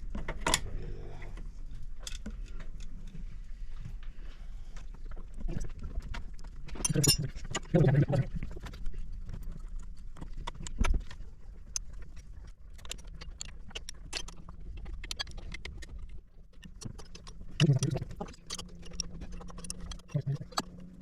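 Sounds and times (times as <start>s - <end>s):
hand tools clicking and knocking: 6.8s - 7.7s
low voice: 6.9s - 8.4s, 17.6s - 18.1s, 20.1s - 20.5s.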